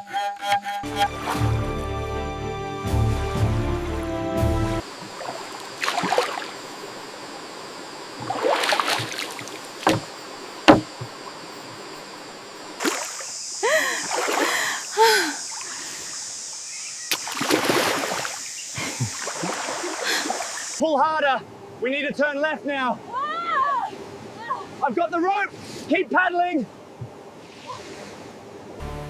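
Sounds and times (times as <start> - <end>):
paddles splashing in water: 4.8 - 7.2, 8.1 - 11.9, 12.7 - 13.4, 14.0 - 14.7, 17.1 - 20.8
paddle knocking against boat: 8.2 - 11.8.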